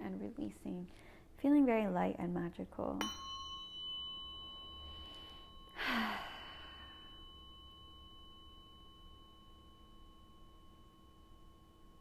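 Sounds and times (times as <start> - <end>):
tuning forks ringing: 3.0 - 12.0
loud breathy sigh: 5.8 - 6.9.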